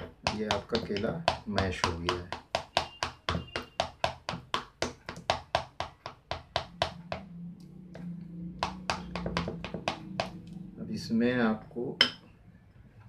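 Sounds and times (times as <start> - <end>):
spoon tapping a bowl: 12.0 - 12.3.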